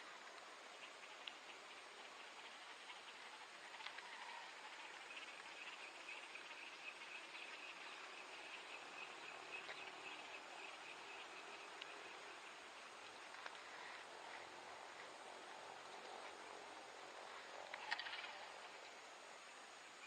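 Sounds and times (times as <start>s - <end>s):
faint clicks: 0.2s - 1.6s, 2.3s - 4.3s, 11.6s - 15.1s, 17.3s - 19.1s.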